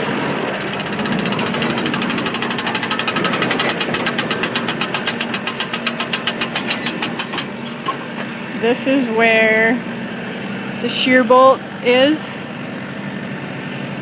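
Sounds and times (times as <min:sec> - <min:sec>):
baler machinery clicking: 0:00.0 - 0:08.2
tractor engine running: 0:00.0 - 0:14.0.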